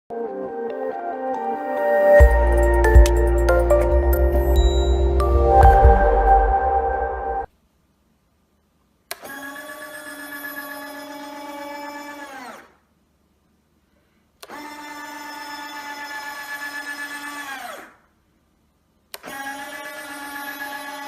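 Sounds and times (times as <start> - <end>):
small geared motor whining: 9.2 - 12.8, 14.4 - 18.0, 19.2 - 21.0.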